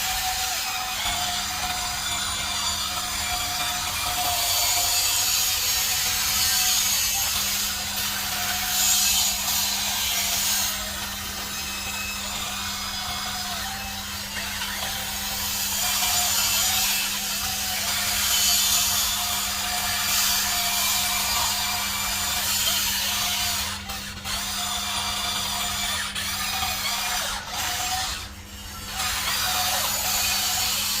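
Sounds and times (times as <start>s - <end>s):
small electric motors whirring: 0.0s - 31.0s.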